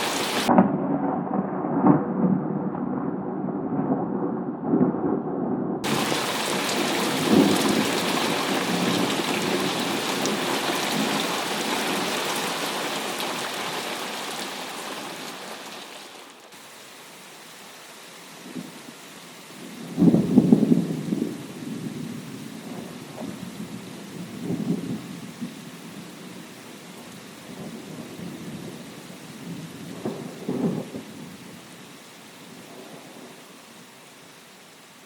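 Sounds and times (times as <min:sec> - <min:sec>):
heavy rain: 0:00.0 - 0:01.9, 0:05.8 - 0:35.0
thunder rumbling: 0:00.0 - 0:15.4, 0:19.5 - 0:26.6, 0:27.4 - 0:31.8.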